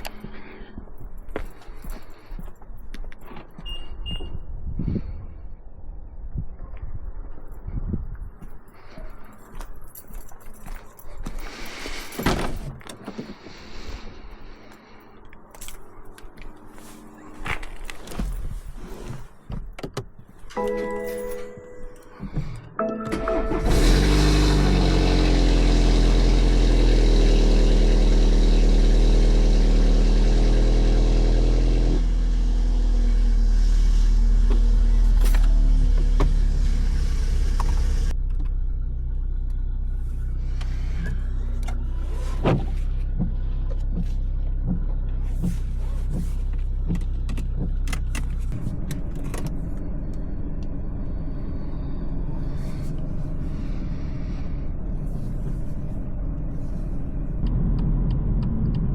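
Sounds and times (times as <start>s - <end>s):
car engine running: 23.4s - 58.9s.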